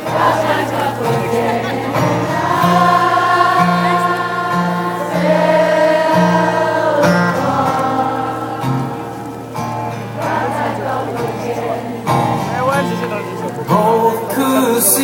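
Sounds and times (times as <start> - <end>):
choir-like held vocal notes: 0.0 - 15.0.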